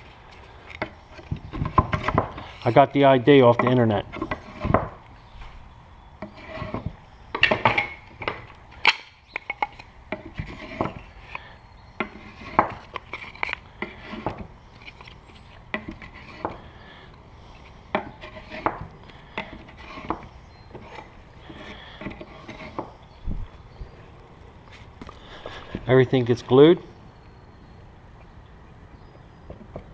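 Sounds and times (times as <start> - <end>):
wooden frame parts knocking: 0.8 - 2.4, 3.5 - 5.0, 6.2 - 11.0.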